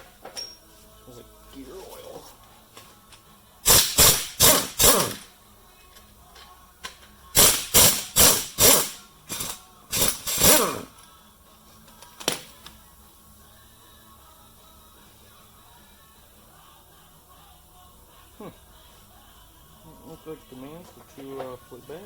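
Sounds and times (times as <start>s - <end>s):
impact wrench bursts: 3.6s - 5.3s, 7.4s - 10.9s.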